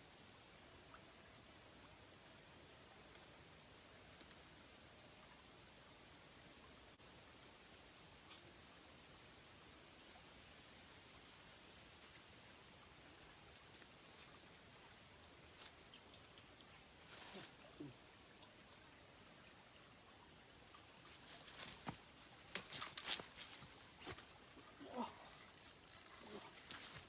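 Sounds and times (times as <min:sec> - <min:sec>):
crickets chirring: 0:00.0 - 0:27.0.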